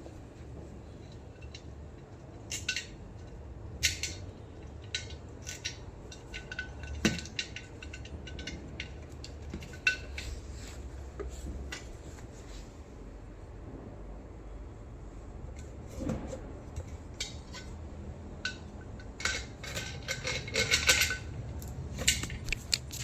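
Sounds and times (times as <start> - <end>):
metal tools clinking together: 18.4 - 21.3.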